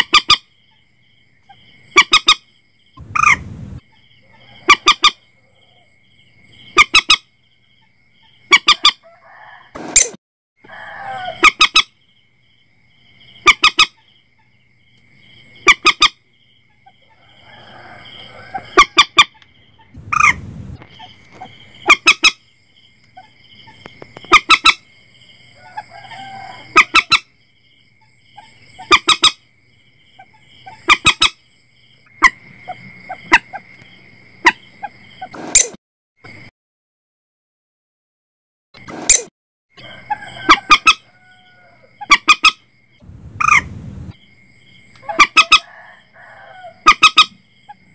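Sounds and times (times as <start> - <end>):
moorhen calls: 3.0 - 3.5, 18.5 - 22.4, 43.4 - 43.7, 45.0 - 45.7.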